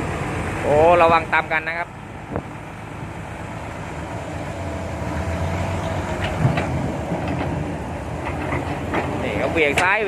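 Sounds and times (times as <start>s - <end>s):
diesel earthmoving machinery: 0.0s - 10.0s.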